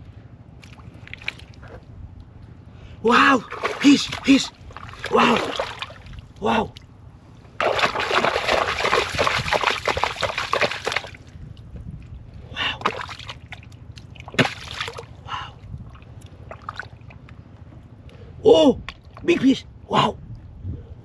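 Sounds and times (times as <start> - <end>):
hands splashing in muddy water: 0.6 - 1.6, 3.4 - 6.2, 7.6 - 11.2, 12.8 - 15.1
sharp slap on water: 14.4 - 14.9.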